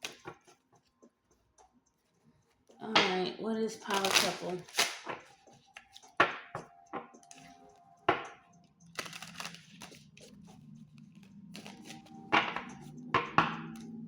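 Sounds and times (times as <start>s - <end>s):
cards shuffling: 0.0s - 0.5s, 3.9s - 6.1s, 8.9s - 12.7s.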